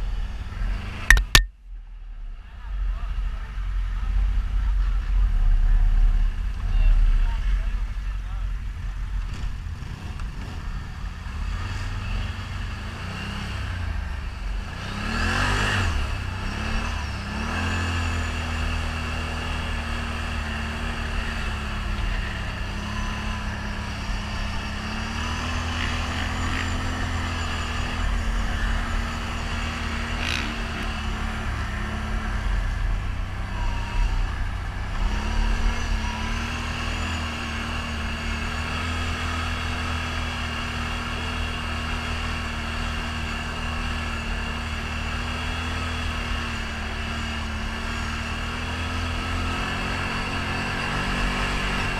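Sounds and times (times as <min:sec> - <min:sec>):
atv engine revving: 0:00.0 - 0:01.4, 0:02.1 - 0:51.9.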